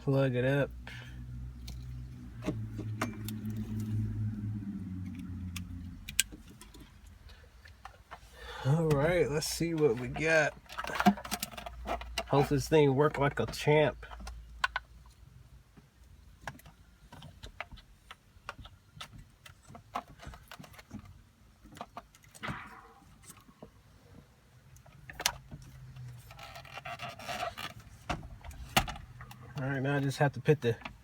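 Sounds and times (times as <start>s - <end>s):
clicks and rattles of handled wiring: 1.6s - 4.1s, 8.9s - 15.2s, 16.0s - 23.8s, 24.7s - 31.0s.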